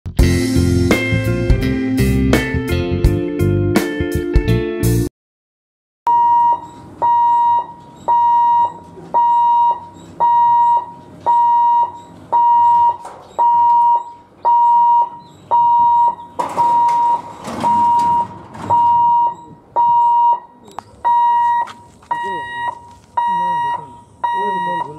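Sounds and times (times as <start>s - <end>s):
level-crossing alarm beeping: 6.1s - 24.9s.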